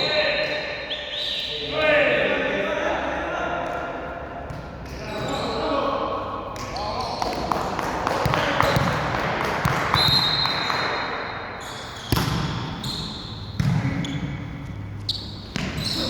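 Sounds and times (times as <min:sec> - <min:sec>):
high whistle-like tone: 0:10.0 - 0:10.7.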